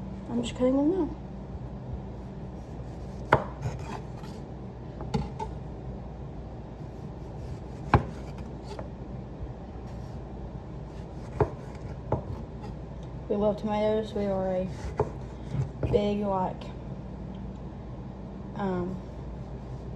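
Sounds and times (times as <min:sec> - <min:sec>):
low hum: 0:00.0 - 0:14.8
knife cutting tomatoes: 0:02.2 - 0:04.4, 0:06.8 - 0:08.9, 0:10.9 - 0:12.8, 0:14.7 - 0:16.0.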